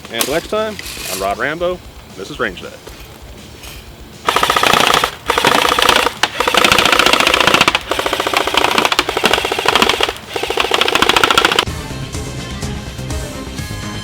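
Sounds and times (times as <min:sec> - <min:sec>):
toy gun firing rapid clicks: 0:04.3 - 0:11.7.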